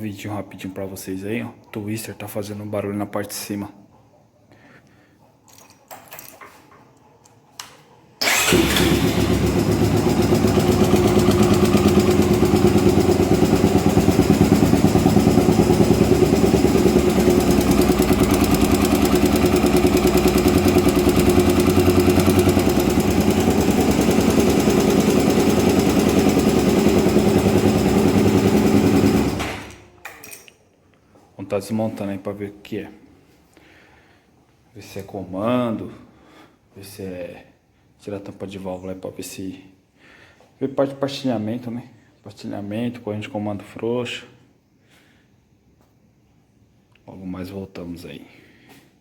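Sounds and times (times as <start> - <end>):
engine top end noise: 8.2 - 13.4
motorcycle engine starting and idling: 8.2 - 30.0.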